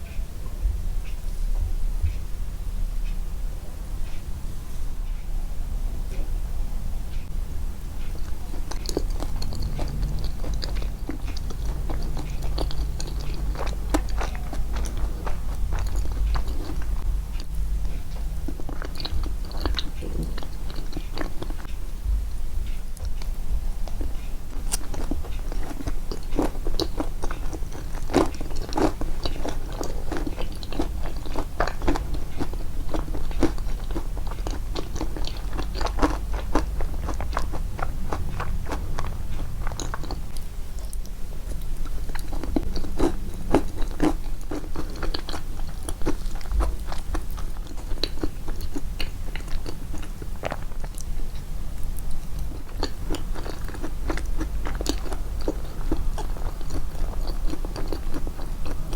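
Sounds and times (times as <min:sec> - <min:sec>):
steady low hum: 0:00.0 - 0:58.9
chewing and biting cake: 0:07.8 - 0:21.7, 0:22.9 - 0:58.9.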